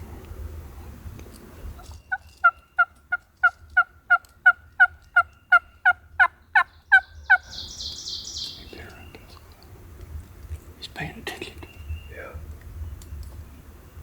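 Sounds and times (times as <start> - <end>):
turkey yelping: 2.1 - 8.6.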